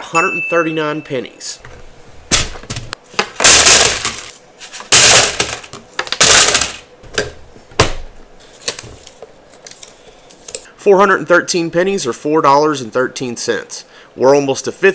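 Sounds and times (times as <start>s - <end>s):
single coins clinking: 3.2s - 6.9s.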